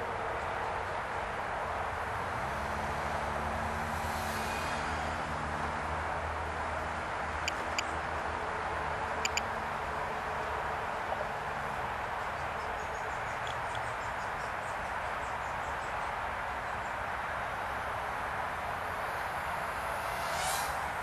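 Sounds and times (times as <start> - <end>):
outdoor background noise: 0.0 - 21.0
small birds chirping: 9.2 - 9.5, 12.3 - 17.1.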